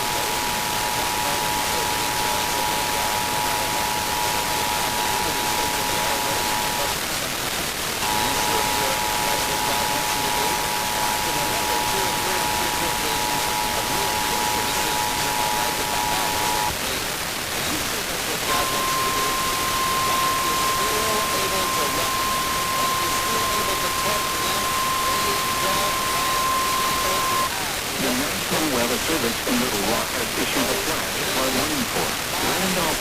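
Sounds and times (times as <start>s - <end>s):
single-tone warning alarm: 0.0s - 6.9s, 8.0s - 16.7s, 18.5s - 27.5s
radio static: 0.0s - 33.0s
two-tone alert signal: 18.5s - 27.5s.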